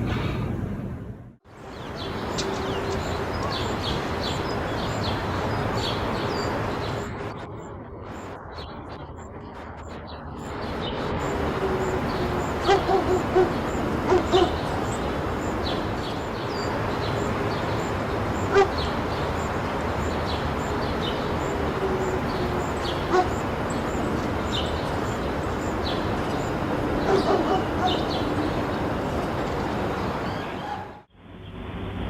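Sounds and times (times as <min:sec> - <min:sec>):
dog barking: 0:12.6 - 0:14.6, 0:18.5 - 0:18.8, 0:23.1 - 0:23.4, 0:27.0 - 0:28.1.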